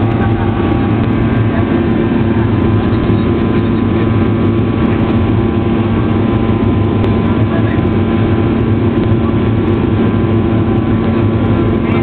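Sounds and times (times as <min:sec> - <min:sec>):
jet cabin engine drone: 0:00.0 - 0:12.0.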